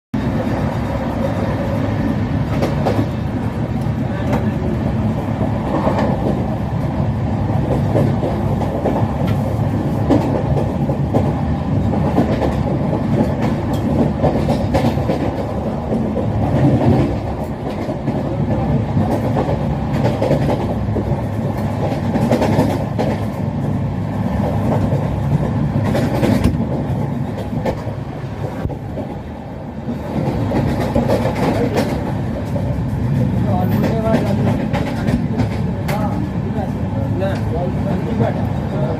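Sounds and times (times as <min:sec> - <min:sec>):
train wheels rumbling on rails: 0:00.1 - 0:38.9
wheels clacking over rail joints: 0:07.6 - 0:23.8, 0:24.4 - 0:28.0, 0:29.9 - 0:36.4.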